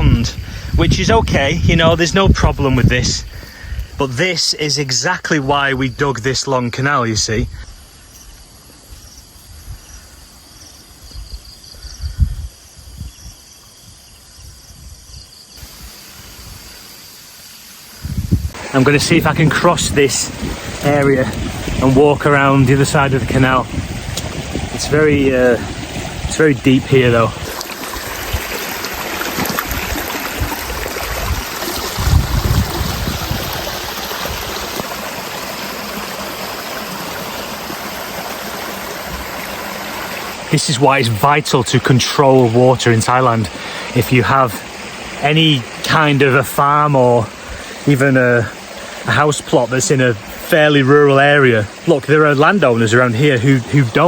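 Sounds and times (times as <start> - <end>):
crickets chirping: 0.0 - 54.0
floodwater rushing: 15.6 - 54.0.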